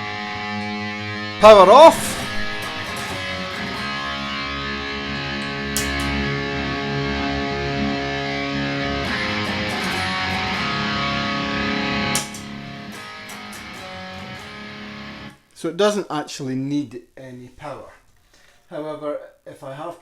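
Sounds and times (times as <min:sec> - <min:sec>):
electric guitar chords: 0:00.0 - 0:15.4.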